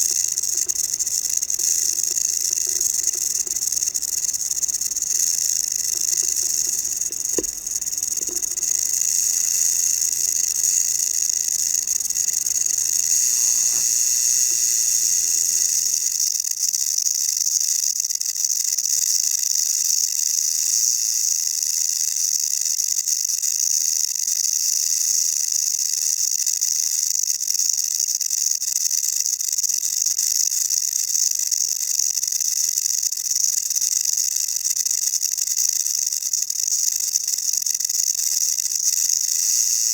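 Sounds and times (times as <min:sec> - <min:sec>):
rattlesnake tail rattling: 0:00.0 - 0:16.4.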